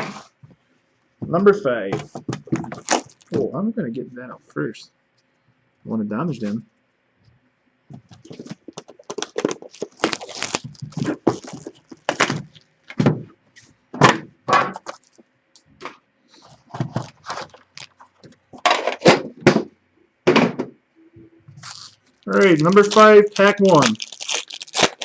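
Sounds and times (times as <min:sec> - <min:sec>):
metal tin and foil packs handled: 0:08.1 - 0:12.6, 0:16.5 - 0:19.0, 0:21.6 - 0:25.0.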